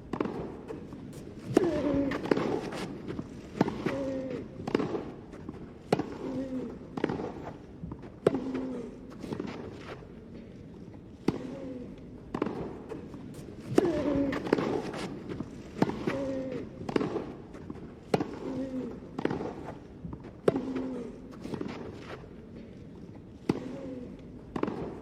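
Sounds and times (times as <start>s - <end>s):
racket hitting tennis ball: 0.0s - 10.0s, 12.3s - 22.3s, 23.4s - 25.0s
players grunting: 13.7s - 15.0s.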